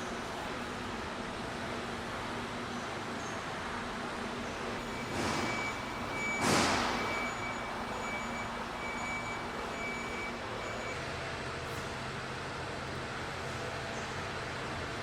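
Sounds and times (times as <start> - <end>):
truck reversing alarm beeping: 4.6 - 11.9.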